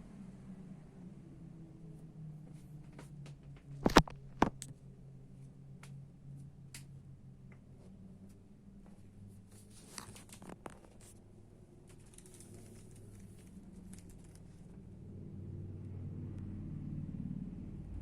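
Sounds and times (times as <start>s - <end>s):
low hum: 0.0s - 18.0s
light clicks and rustles: 2.4s - 4.9s, 5.8s - 11.2s, 11.8s - 14.9s.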